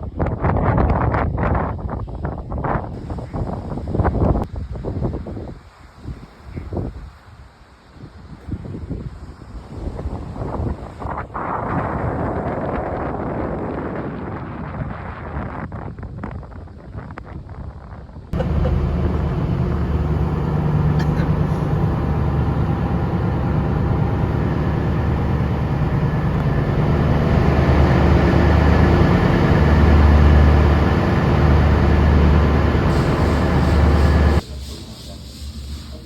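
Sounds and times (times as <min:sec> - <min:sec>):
engine humming: 0:18.4 - 0:34.4.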